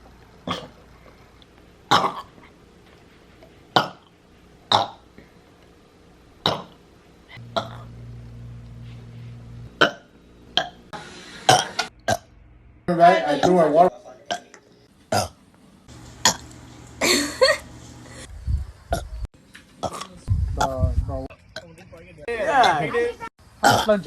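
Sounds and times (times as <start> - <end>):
woman burping: 1.9 - 2.4, 7.4 - 7.9, 23.6 - 24.0.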